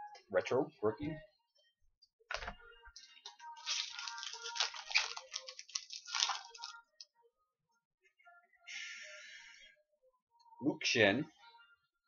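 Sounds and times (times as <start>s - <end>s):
foil pack crinkling: 3.6s - 6.8s.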